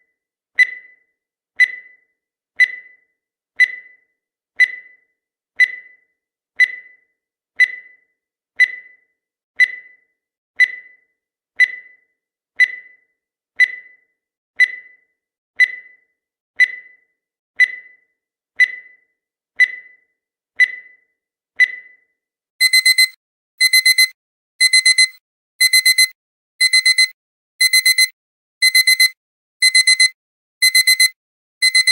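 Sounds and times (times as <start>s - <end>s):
digital alarm clock beeping: 0.6s - 14.0s, 14.6s - 22.0s, 22.6s - 31.9s
countdown timer beeps: 22.6s - 31.9s.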